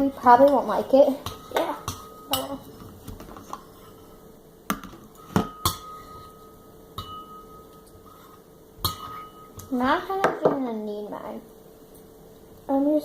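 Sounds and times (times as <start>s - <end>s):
utensil clinking against bowl: 7.0s - 8.0s.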